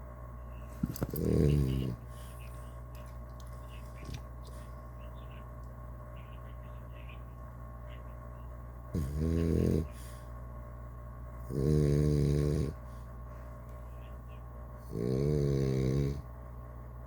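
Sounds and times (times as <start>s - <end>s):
steady low hum: 0.0s - 17.0s
person snoring: 14.9s - 16.2s.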